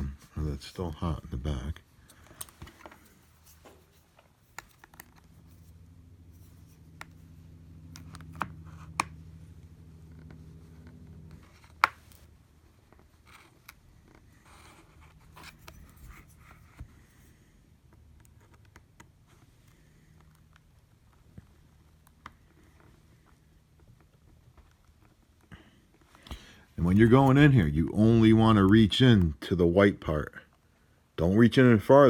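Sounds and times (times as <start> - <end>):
low hum: 1.8 - 24.5.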